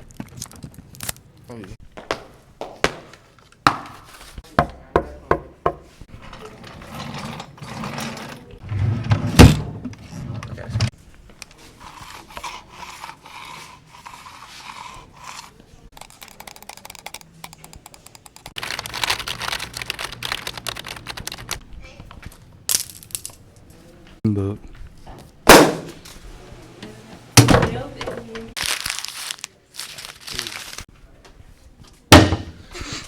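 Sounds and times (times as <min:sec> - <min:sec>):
knocks on wood: 0:04.6 - 0:05.9
chair scraping: 0:06.1 - 0:10.9
desk drawer banged shut: 0:08.7 - 0:09.9, 0:32.1 - 0:32.6.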